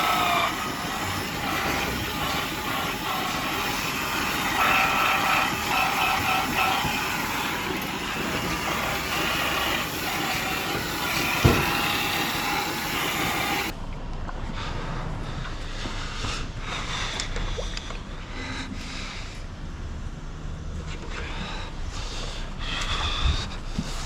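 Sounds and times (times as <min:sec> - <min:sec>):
machinery noise with whining: 0:00.0 - 0:16.6.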